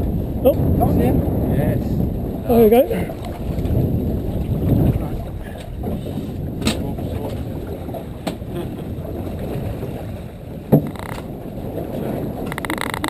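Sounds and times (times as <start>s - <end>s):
boat rumble and water wash: 0.0s - 13.0s
wind on microphone: 0.0s - 13.0s
sharp knocks on boat: 4.6s - 8.5s, 10.6s - 11.3s.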